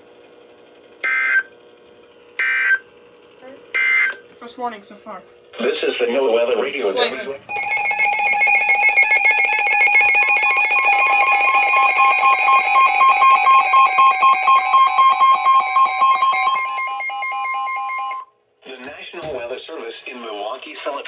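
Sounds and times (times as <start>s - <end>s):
rapidly pulsing electronic alarm: 7.5s - 18.3s
steady high alarm tone: 7.5s - 18.3s.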